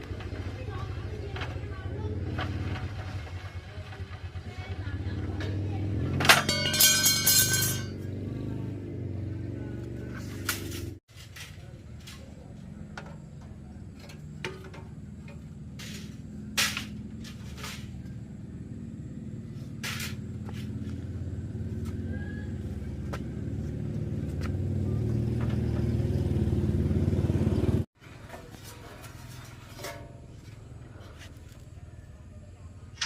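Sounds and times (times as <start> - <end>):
motor rumbling: 0.0 - 11.0, 11.6 - 33.0
sharp metallic knocks: 6.2 - 8.0.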